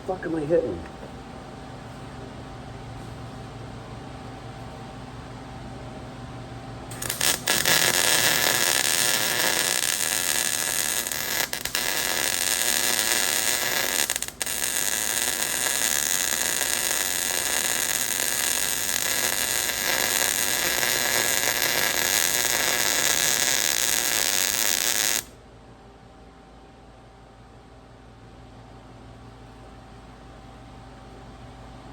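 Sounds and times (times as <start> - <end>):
welder arc crackling: 6.9 - 25.3.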